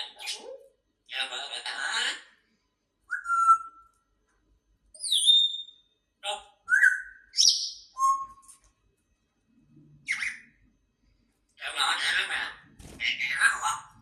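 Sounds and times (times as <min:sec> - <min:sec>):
parrot whistling and calling: 0:03.1 - 0:03.9, 0:05.0 - 0:05.8, 0:06.6 - 0:08.5, 0:10.0 - 0:10.6.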